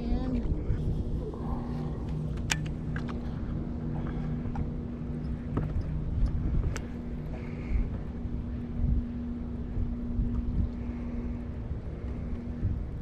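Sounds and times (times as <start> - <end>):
boat motor humming: 0.0 - 13.0
low rumbling noise: 0.0 - 13.0.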